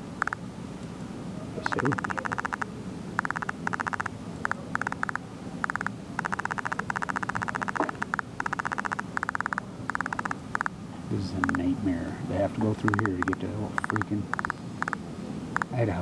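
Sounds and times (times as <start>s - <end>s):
low steady background hum: 0.0s - 16.0s
mouse scroll wheel clicking: 1.7s - 2.6s, 3.2s - 10.7s, 12.8s - 15.0s.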